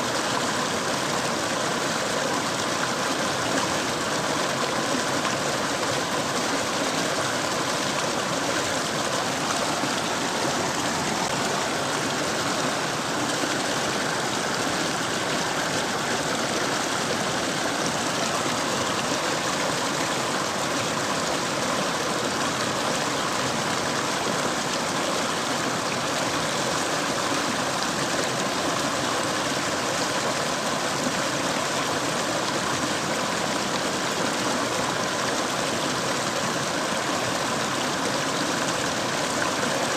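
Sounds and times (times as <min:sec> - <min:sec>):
mountain stream rushing: 0:00.0 - 0:39.9.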